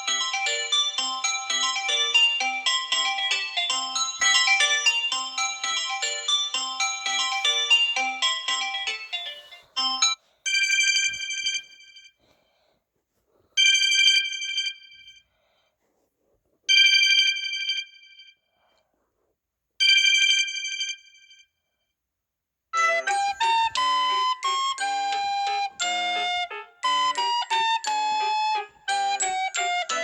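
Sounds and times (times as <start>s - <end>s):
bell-like phone ring: 0.0s - 12.2s, 13.6s - 15.2s, 16.7s - 18.5s, 19.8s - 21.6s
chiming phone ringtone melody: 0.0s - 12.2s, 13.6s - 15.2s, 22.8s - 30.0s.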